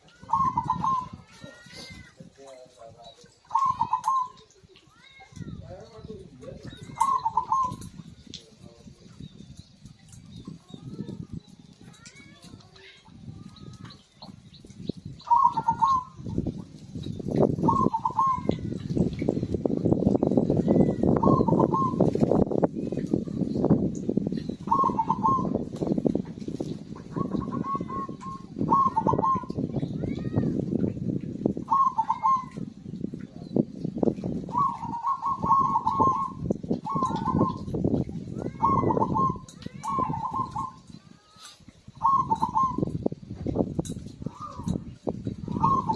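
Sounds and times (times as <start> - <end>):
dove cooing: 0.2 - 2.0, 3.4 - 4.6, 6.6 - 8.1, 15.2 - 16.6, 17.6 - 18.7, 21.1 - 22.2, 24.6 - 25.7, 27.0 - 29.6, 31.6 - 32.7, 34.5 - 37.8, 38.5 - 41.0, 41.9 - 43.0, 45.4 - 45.9.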